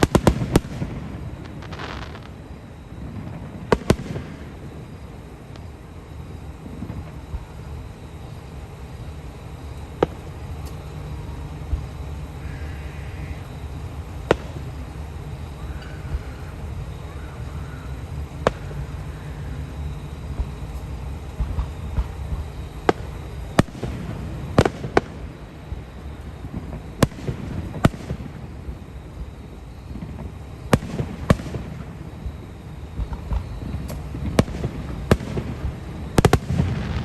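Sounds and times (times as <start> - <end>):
fireworks bangs: 0.0 - 5.8, 9.9 - 28.7, 29.9 - 32.3, 33.0 - 37.0
low background rumble: 0.0 - 37.0.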